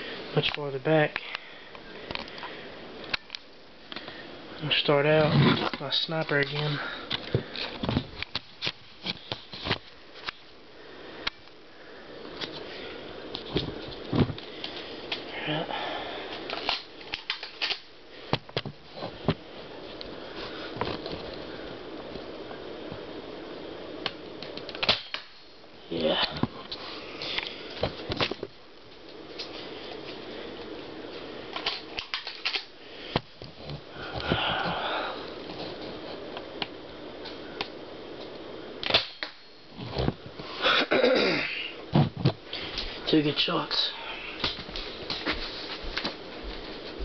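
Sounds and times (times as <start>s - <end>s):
steady hiss: 0.0s - 47.0s
rustling: 44.5s - 47.0s.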